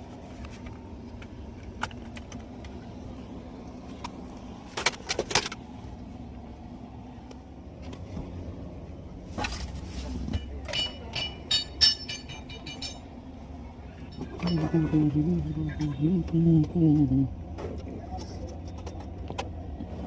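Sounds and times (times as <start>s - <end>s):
steady low hum: 0.0s - 20.0s
metallic clinks of tools: 10.7s - 13.1s.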